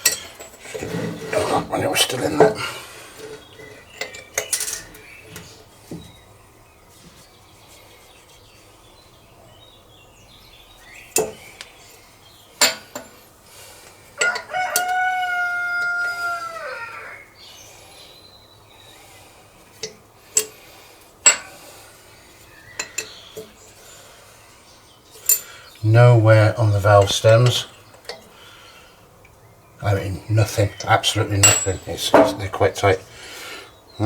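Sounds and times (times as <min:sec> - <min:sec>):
rooster crowing: 0:14.2 - 0:17.4
metallic clinks of tools: 0:31.4 - 0:32.4.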